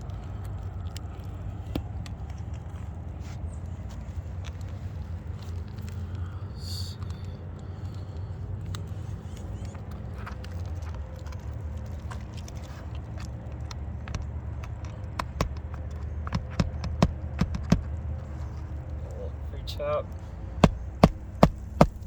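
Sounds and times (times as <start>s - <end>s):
shingles clicking and tapping: 8.7s - 22.0s.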